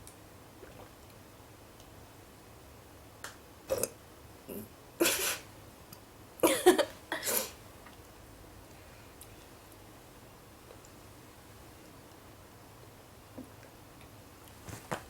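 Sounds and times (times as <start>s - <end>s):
woman burping: 6.4s - 7.5s.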